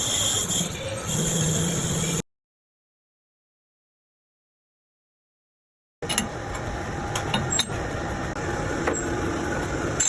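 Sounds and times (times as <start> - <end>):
metal lathe running: 6.0 - 10.0.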